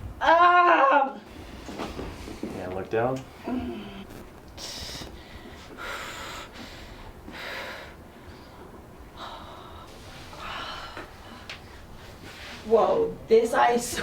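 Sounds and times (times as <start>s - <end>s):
person breathing heavily: 3.4s - 8.1s.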